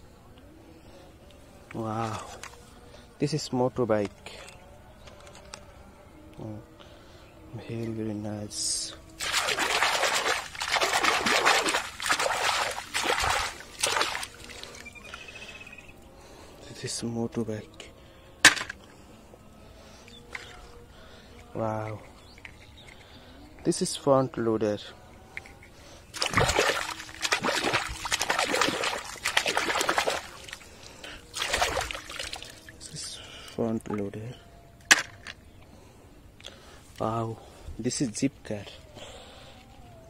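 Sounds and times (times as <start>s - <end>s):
water splashing: 9.2s - 15.1s, 26.1s - 32.9s.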